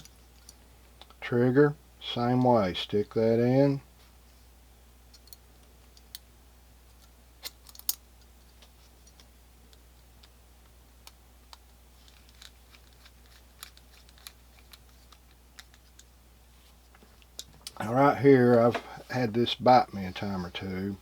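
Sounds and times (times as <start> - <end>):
faint steady hum: 0.0 - 21.0
metallic clicks of revolver parts: 7.4 - 8.0.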